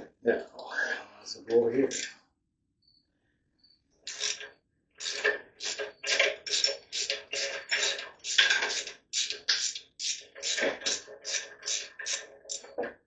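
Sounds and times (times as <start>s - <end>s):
hand ratchet clicking: 4.1s - 4.4s, 5.0s - 12.7s.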